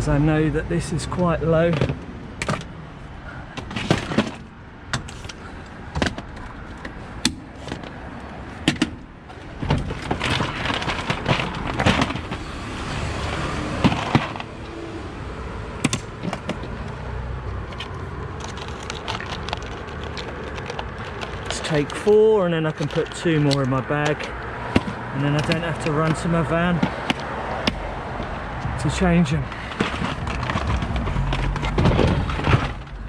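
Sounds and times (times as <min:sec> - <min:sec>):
street traffic hum: 0:00.0 - 0:33.0
items knocking and clicking: 0:01.6 - 0:02.7, 0:03.6 - 0:08.0, 0:08.6 - 0:12.5, 0:13.7 - 0:14.6, 0:15.8 - 0:17.0, 0:17.6 - 0:28.7, 0:29.5 - 0:33.0
rustling of rummaging: 0:03.3 - 0:14.6, 0:15.8 - 0:17.0, 0:17.6 - 0:33.0.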